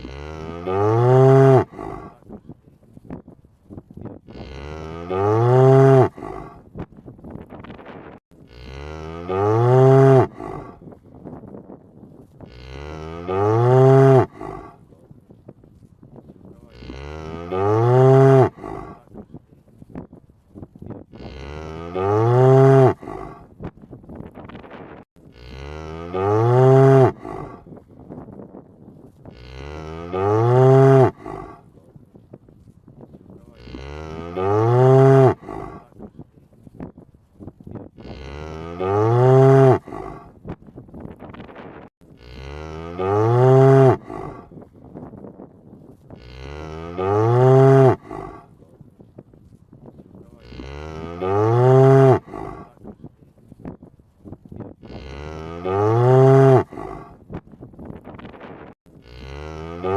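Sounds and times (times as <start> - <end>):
cow mooing: 0.0 - 2.2, 4.3 - 6.6, 8.4 - 10.8, 12.4 - 14.8, 16.6 - 19.1, 21.1 - 23.5, 25.3 - 27.7, 29.3 - 31.6, 33.5 - 35.9, 38.0 - 40.3, 42.2 - 44.5, 46.1 - 48.5, 50.3 - 52.8, 54.8 - 57.2, 59.0 - 59.9.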